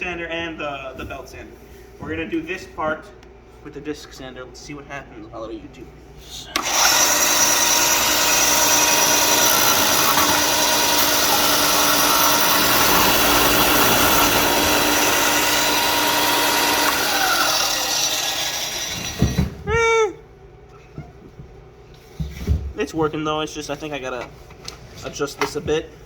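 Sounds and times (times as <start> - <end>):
sander sanding wood: 6.6 - 19.4.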